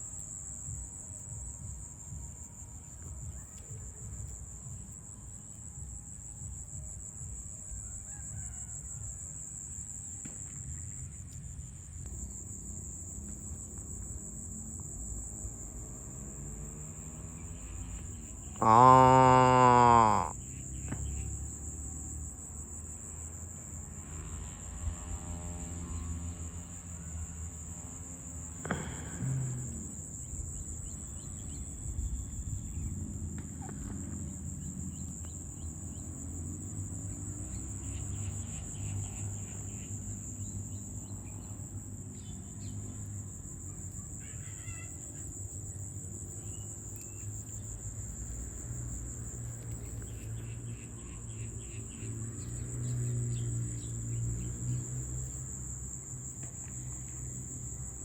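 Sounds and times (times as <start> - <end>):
crickets chirring: 0.0 - 58.0
cow mooing: 18.6 - 20.3.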